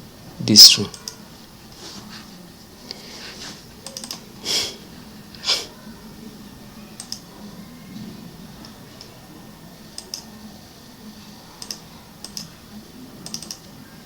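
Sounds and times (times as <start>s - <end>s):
loud breath noises: 2.9s - 3.7s, 4.4s - 5.8s
keyboard keystrokes clicking: 3.8s - 4.2s, 7.0s - 7.3s, 10.0s - 10.3s, 11.6s - 12.6s, 13.2s - 13.7s.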